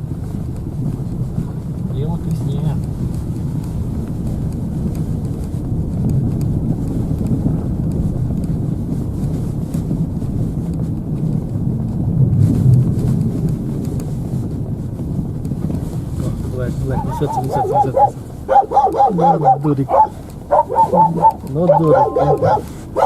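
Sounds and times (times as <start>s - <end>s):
car engine and road rumble: 0.0s - 23.0s.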